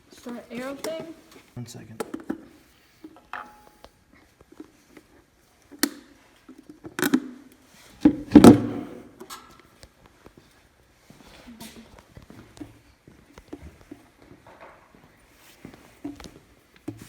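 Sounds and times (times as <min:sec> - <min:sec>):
handling knocks and clunks: 0:08.0 - 0:09.0.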